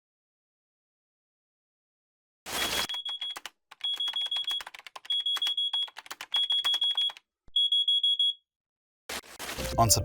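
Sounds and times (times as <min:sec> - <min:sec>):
pager beeping: 0:03.0 - 0:08.4.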